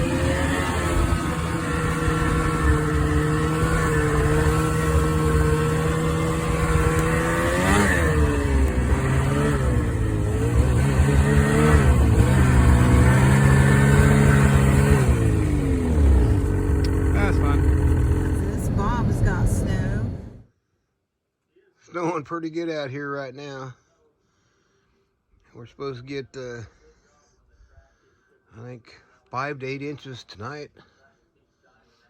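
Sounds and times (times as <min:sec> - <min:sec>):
vehicle engine revving: 0:00.0 - 0:20.4.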